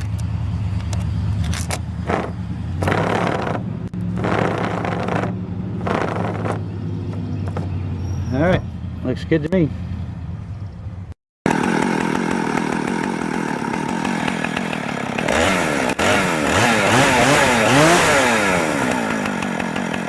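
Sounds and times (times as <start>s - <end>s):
chainsaw revving: 1.6s - 7.2s, 11.5s - 20.0s.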